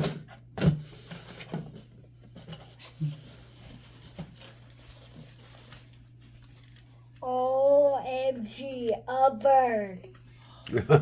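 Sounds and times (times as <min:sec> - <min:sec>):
rustling of gift box packaging: 0:00.0 - 0:07.2.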